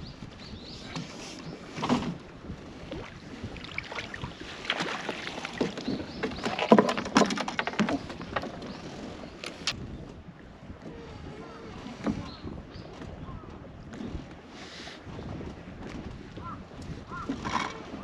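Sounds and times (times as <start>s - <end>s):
fish splashing: 2.9s - 6.9s.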